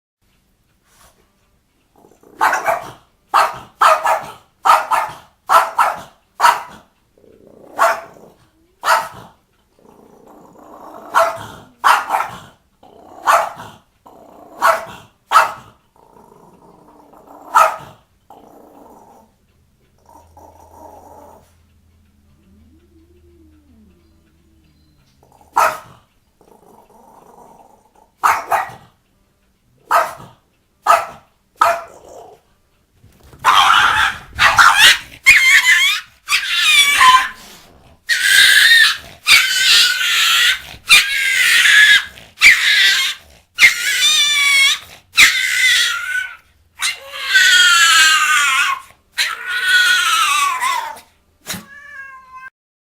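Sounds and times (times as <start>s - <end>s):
dog barking: 2.4s - 6.8s, 7.8s - 8.2s, 8.8s - 9.3s, 11.1s - 12.5s, 13.2s - 13.7s, 14.6s - 15.8s, 17.5s - 18.0s, 25.5s - 26.0s, 28.2s - 28.9s, 29.8s - 32.0s, 33.4s - 37.4s
dog high-pitched wavering calls: 33.5s - 37.4s, 38.1s - 51.0s.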